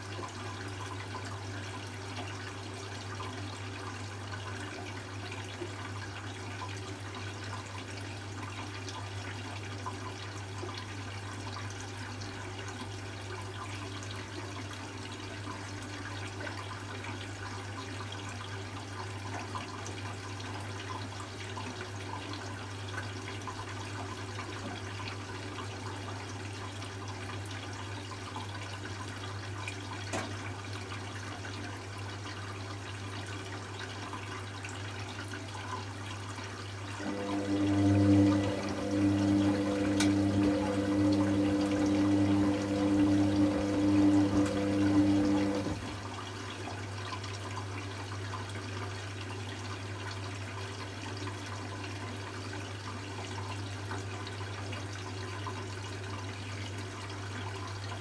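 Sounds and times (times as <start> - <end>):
water rushing into washing machine: 30.0 - 30.9, 36.7 - 47.3
low hum: 37.0 - 46.0.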